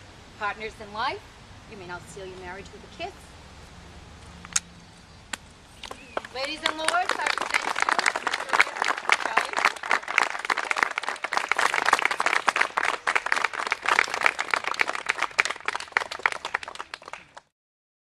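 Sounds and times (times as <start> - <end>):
audience applauding: 5.9 - 17.5.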